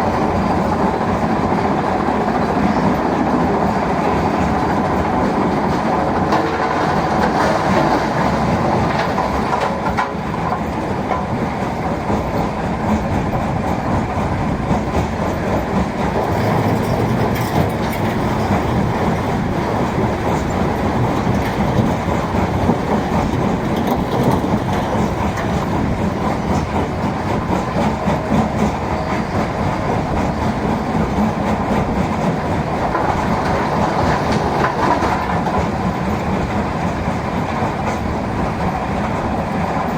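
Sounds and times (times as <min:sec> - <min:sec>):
excavator diesel engine: 0:00.0 - 0:39.9.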